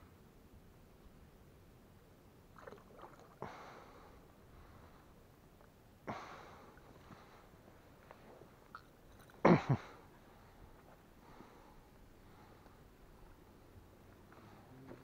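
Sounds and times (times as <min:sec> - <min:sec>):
sharp splashes in water: 0:02.6 - 0:03.5.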